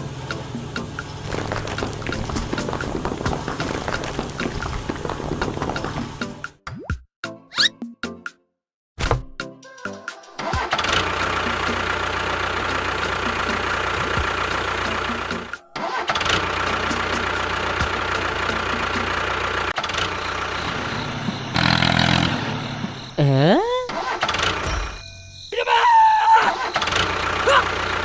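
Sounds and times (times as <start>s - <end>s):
engine running: 0.0s - 6.6s, 10.7s - 24.8s, 26.7s - 28.0s.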